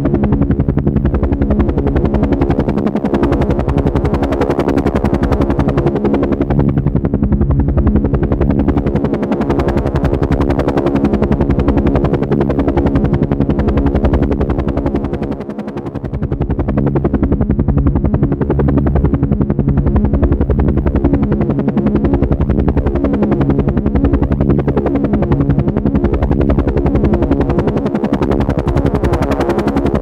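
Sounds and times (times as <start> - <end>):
helicopter rotor chopping: 0.0 - 30.0.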